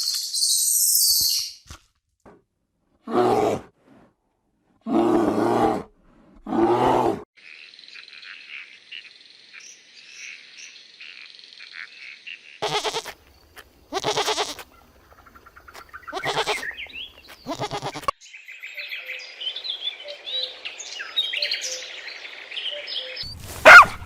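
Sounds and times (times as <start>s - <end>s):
goat bleating: 12.6s - 13.2s, 13.9s - 14.7s, 16.1s - 16.8s, 17.4s - 18.1s
birds chirping and twittering: 14.7s - 23.8s.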